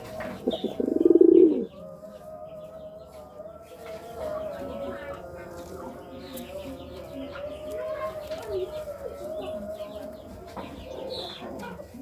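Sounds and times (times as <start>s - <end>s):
pigeons cooing: 0.0s - 2.1s.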